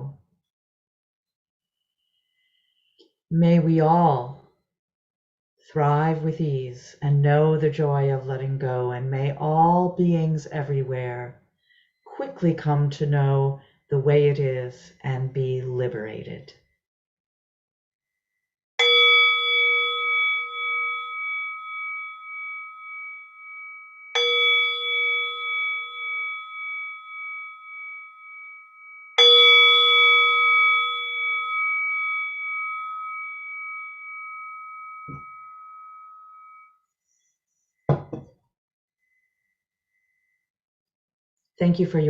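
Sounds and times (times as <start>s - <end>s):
meditation bell ringing: 18.8s - 36.9s.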